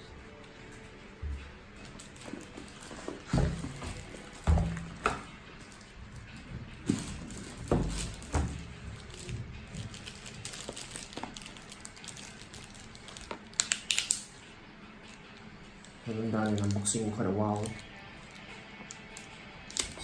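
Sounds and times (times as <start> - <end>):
plastic wrapping crinkling: 1.8 - 15.4, 16.2 - 18.5.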